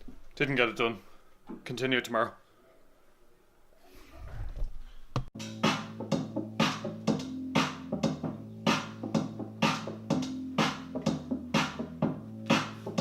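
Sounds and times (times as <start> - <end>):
electronic music with drum beat: 5.4 - 13.0.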